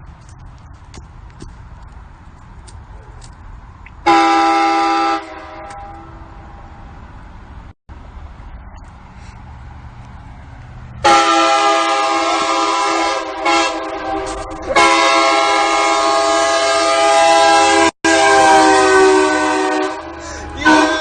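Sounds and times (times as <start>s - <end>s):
air horn chord blasts: 4.1s - 6.3s, 11.0s - 21.0s.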